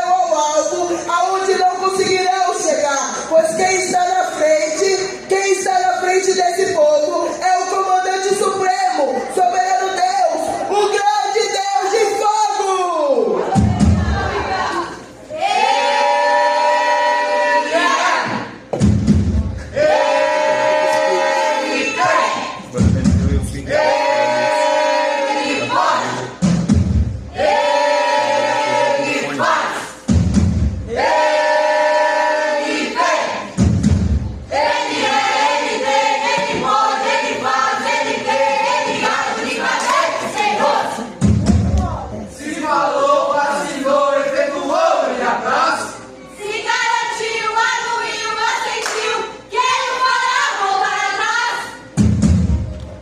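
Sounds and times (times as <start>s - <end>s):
choir singing held notes: 19.6s - 22.8s, 23.6s - 26.4s, 27.3s - 30.1s, 30.9s - 33.6s, 34.4s - 41.2s
heavy low thump: 22.8s - 23.6s.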